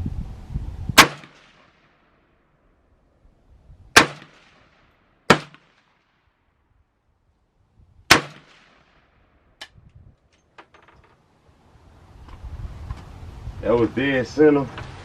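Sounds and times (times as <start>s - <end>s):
rifle shots: 1.0s - 1.8s, 4.0s - 6.0s, 8.1s - 9.0s.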